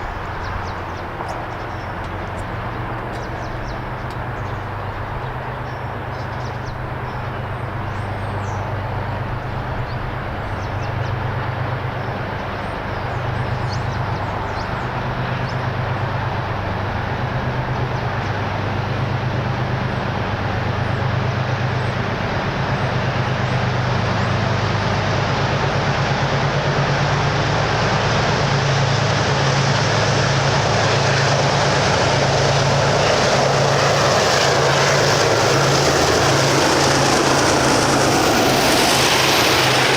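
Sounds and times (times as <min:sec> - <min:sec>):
diesel locomotive engine drone: 0:00.0 - 0:39.9
train rumble: 0:00.0 - 0:39.9.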